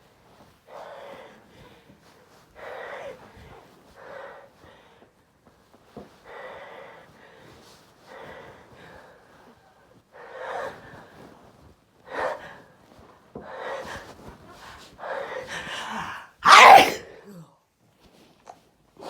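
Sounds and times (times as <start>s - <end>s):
person gasping in sharply: 15.4s - 17.4s.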